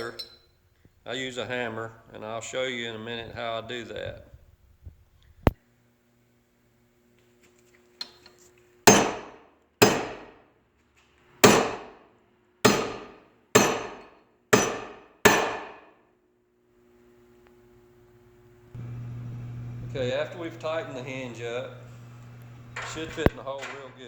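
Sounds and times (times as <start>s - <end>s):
hammer striking metal hinge: 8.9s - 10.3s, 11.4s - 11.9s, 12.7s - 15.9s.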